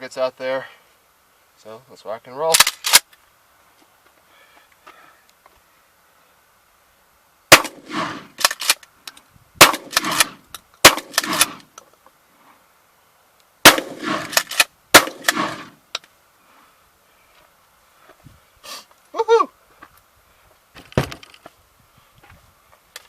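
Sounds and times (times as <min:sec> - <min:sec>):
shotgun blasts with echo: 0:07.5 - 0:08.4, 0:09.6 - 0:11.6, 0:13.6 - 0:15.8.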